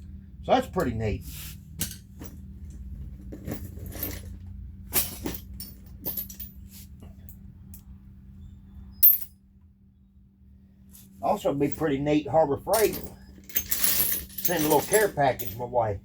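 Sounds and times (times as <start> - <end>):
metal parts clinking: 3.2 - 6.5, 9.0 - 9.3, 12.7 - 15.7.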